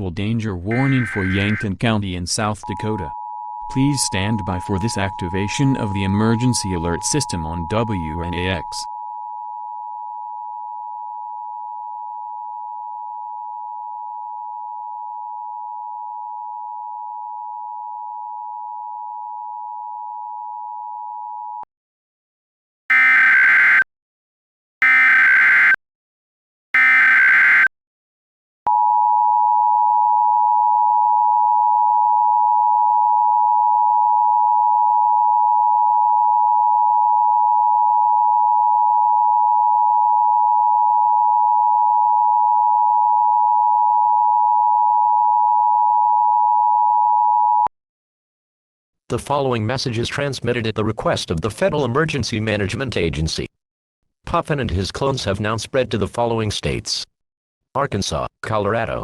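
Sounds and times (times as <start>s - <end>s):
screeching data bursts: 0.7s - 1.6s, 22.9s - 23.8s, 24.8s - 25.8s, 26.8s - 27.7s
two-tone attention signal: 0.7s - 1.7s, 22.9s - 23.8s, 24.8s - 25.8s, 26.8s - 27.7s.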